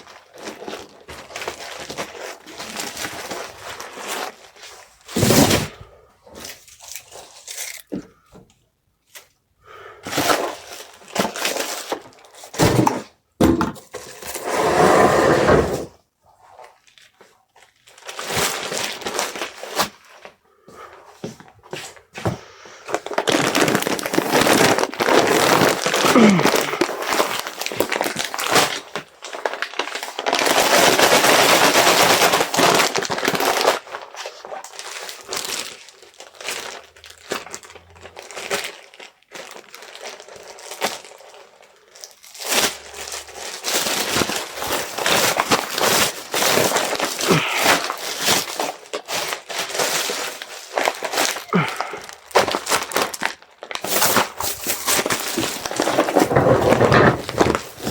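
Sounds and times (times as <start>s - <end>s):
packing material rustling: 0.0s - 7.9s, 10.1s - 13.0s, 16.5s - 20.3s, 22.8s - 57.9s
knocks and thuds: 12.6s - 13.8s.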